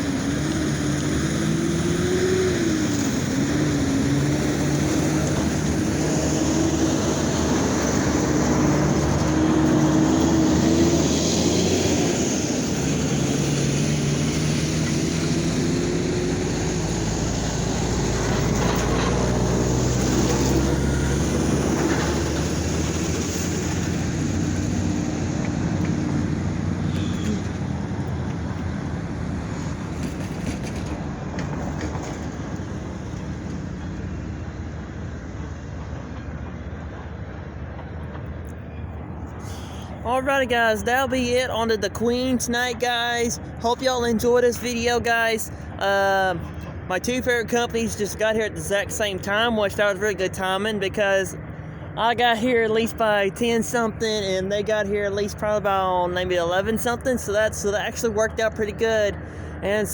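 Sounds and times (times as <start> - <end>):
diesel locomotive engines running: 0.0 - 59.9.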